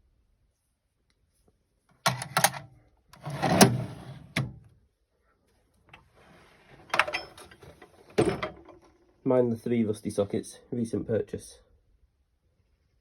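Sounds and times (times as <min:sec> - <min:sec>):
drawer sliding with a rasp: 0:03.2 - 0:04.7
metal drawers clacking: 0:03.2 - 0:04.7, 0:06.8 - 0:08.8.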